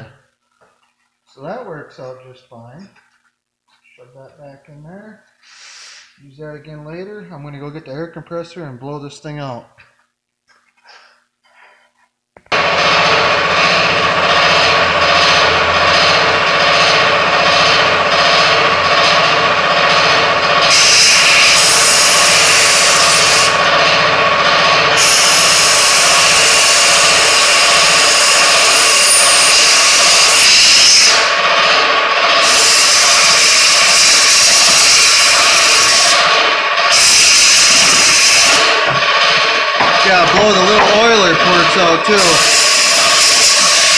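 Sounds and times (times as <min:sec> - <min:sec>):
air compressor running: 0:12.5 - 0:43.9
air blow gun hissing: 0:40.0 - 0:43.9.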